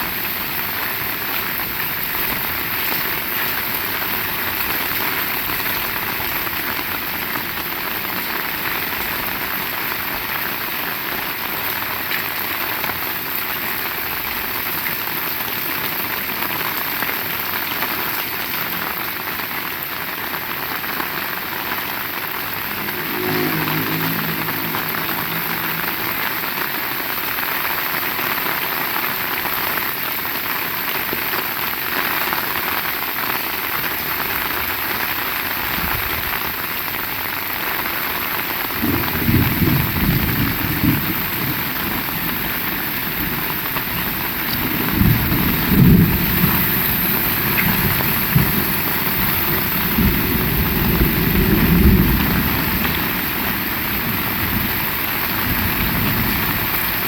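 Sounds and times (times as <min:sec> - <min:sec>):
heavy rain falling: 0:00.0 - 0:57.0
rolling thunder: 0:38.7 - 0:57.0.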